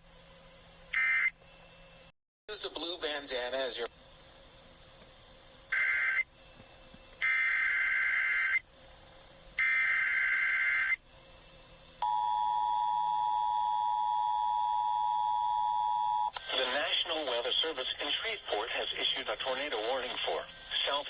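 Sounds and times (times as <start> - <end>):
screechy digital data tones: 7.2 - 8.6, 9.6 - 11.0.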